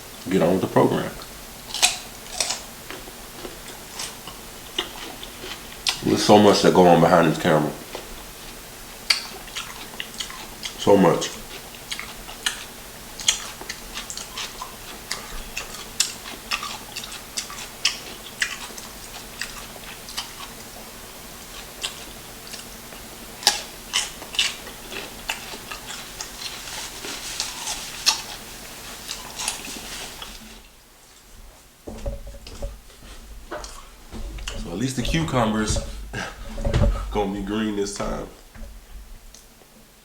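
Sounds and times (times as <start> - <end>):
person chewing food: 1.7 - 6.0, 7.9 - 31.3, 32.0 - 34.8.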